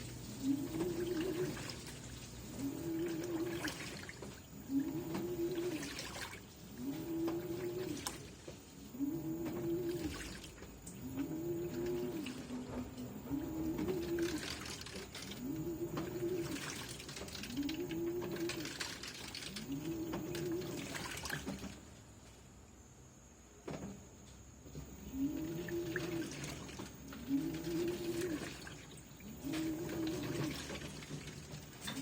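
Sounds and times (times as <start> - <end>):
water and laundry sloshing: 0.0 - 22.6, 24.6 - 32.0
washing machine motor whine: 0.0 - 32.0.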